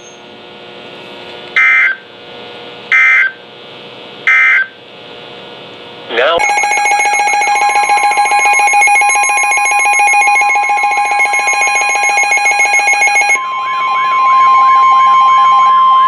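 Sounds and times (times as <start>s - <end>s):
pulsing buzzing alarm: 1.6s - 2.1s, 2.9s - 3.4s, 4.3s - 4.8s, 6.4s - 16.0s
steady alarm tone: 6.4s - 16.0s.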